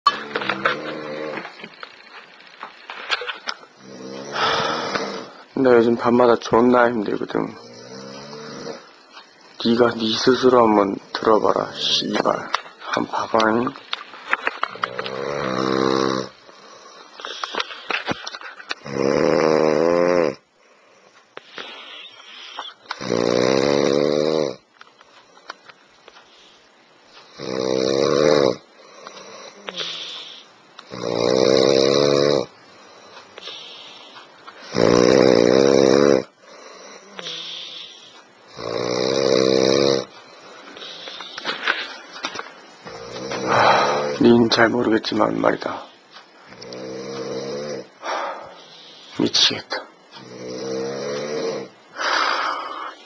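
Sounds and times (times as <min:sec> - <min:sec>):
man snoring heavily: 0:00.1 - 0:01.7, 0:03.8 - 0:06.2, 0:07.4 - 0:09.0, 0:14.7 - 0:18.2, 0:18.8 - 0:20.4, 0:21.6 - 0:24.6, 0:27.3 - 0:41.9, 0:42.8 - 0:44.6, 0:46.6 - 0:49.3, 0:50.2 - 0:53.0
soft breathing: 0:20.6 - 0:22.8, 0:32.6 - 0:34.7, 0:40.1 - 0:44.2, 0:48.0 - 0:49.3, 0:51.9 - 0:53.0.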